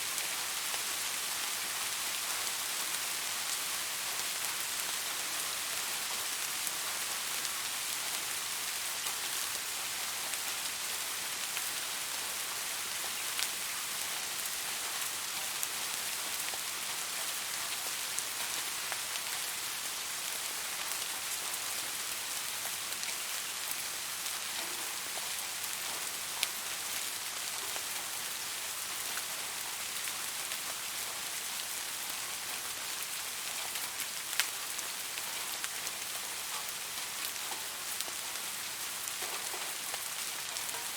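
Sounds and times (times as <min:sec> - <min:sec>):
soft rain falling: 0:00.0 - 0:40.9.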